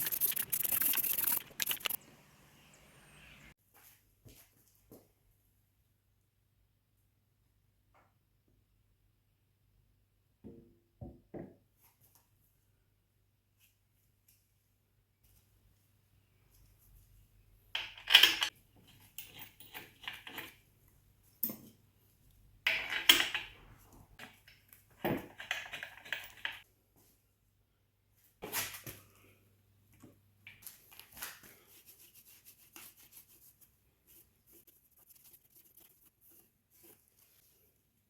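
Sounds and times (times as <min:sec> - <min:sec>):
metal tools clinking and clanking: 0:17.8 - 0:20.6, 0:22.7 - 0:23.6, 0:24.2 - 0:26.6.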